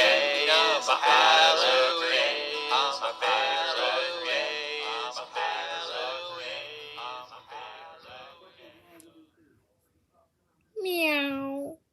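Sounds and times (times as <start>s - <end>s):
children's song with singing: 0.0s - 8.2s.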